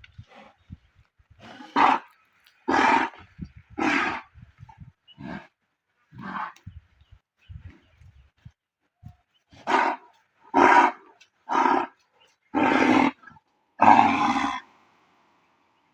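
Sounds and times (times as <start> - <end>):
bull giving hoarse calls: 1.4 - 2.1, 2.7 - 4.4, 9.5 - 14.7.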